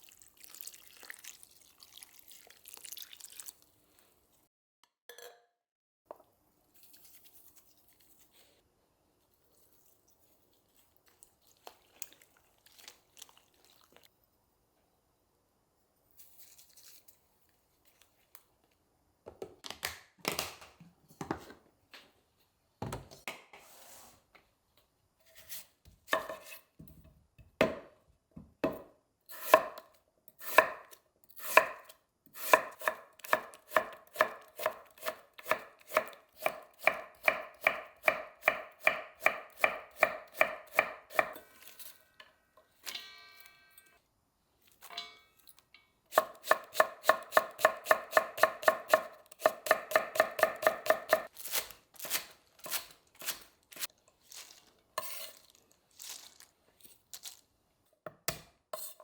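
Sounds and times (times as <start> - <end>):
knife chopping on cutting board: 28.6 - 41.4, 46.1 - 51.3.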